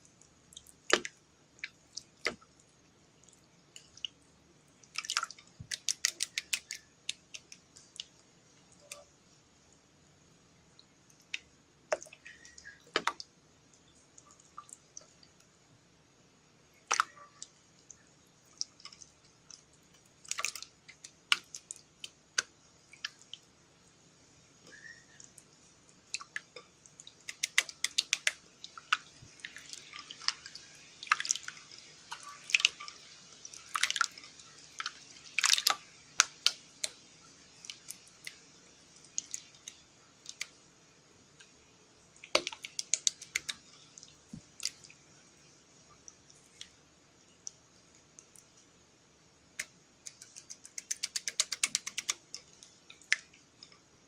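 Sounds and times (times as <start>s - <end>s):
slime squelching and popping: 4.8s - 8.2s, 26.0s - 37.0s, 42.2s - 45.0s, 49.6s - 53.3s.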